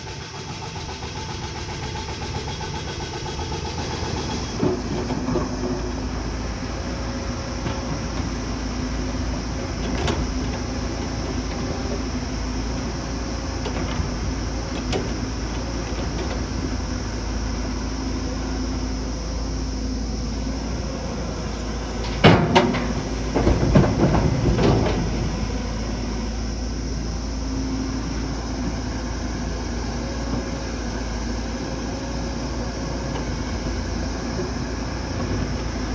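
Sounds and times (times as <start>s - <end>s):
heavy machinery diesel engine running: 0.0s - 35.9s
metal clanks and knocks: 21.9s - 25.8s.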